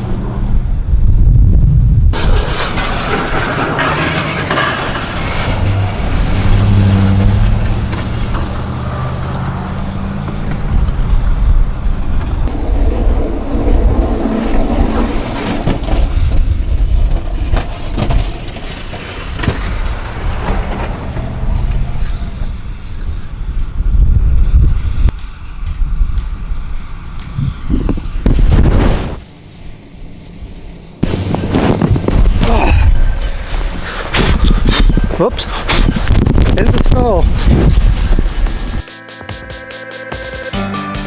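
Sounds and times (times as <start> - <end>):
truck engine running: 2.2 - 12.5, 19.0 - 38.9.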